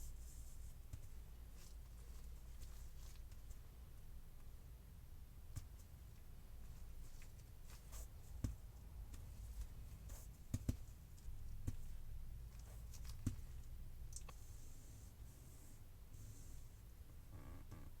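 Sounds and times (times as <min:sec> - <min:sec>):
faint low hum: 0:00.0 - 0:18.0.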